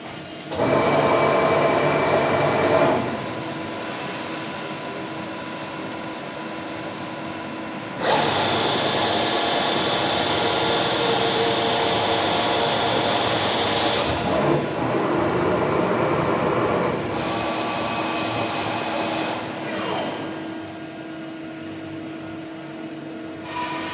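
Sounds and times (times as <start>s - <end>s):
heavy workshop machinery humming: 0.0s - 23.9s
loud mechanical run: 0.5s - 3.3s, 8.0s - 20.5s.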